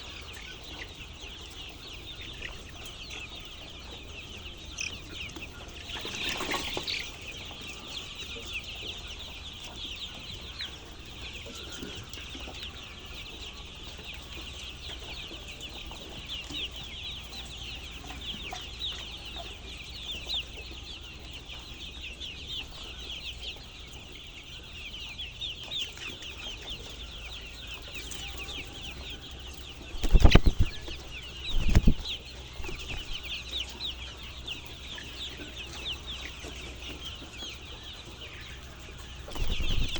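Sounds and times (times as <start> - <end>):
chickens peeping: 0.0 - 39.9.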